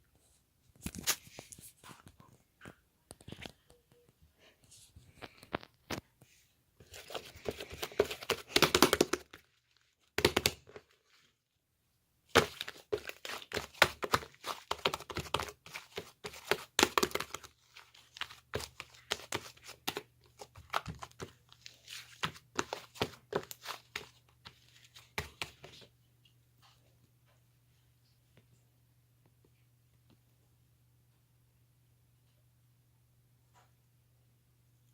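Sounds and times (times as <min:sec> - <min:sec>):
crinkling and crackling materials: 0:00.0 - 0:27.4.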